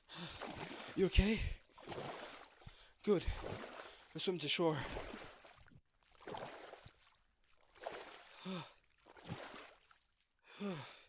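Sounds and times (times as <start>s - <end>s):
man breathing hard: 10.5s - 11.0s.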